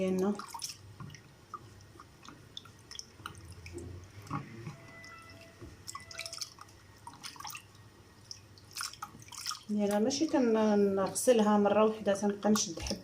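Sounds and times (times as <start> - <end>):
water dripping and splashing: 0.0 - 13.0.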